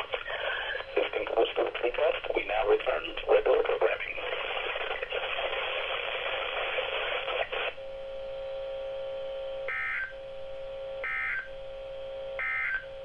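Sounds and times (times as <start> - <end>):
static hiss: 0.0 - 7.8
steady buzzing tone: 5.8 - 13.0.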